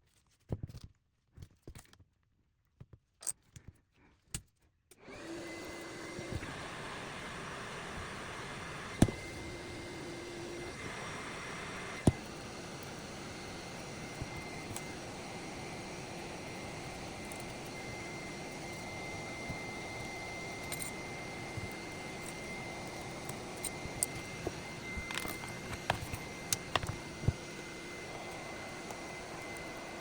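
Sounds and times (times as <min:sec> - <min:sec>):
thin high whine: 0:08.9 - 0:30.0
plastic pry tools clicking: 0:20.0 - 0:27.4.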